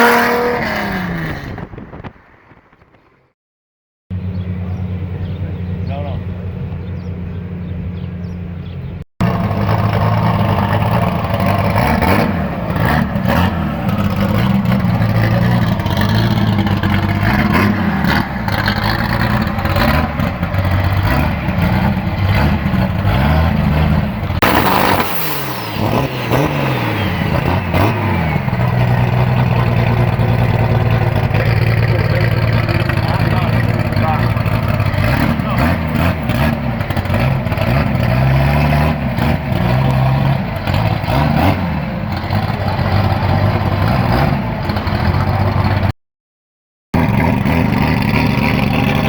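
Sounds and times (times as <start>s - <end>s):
car engine revving hard: 0.0s - 1.7s, 9.2s - 45.9s, 47.0s - 49.0s
loud hiss: 24.4s - 26.8s.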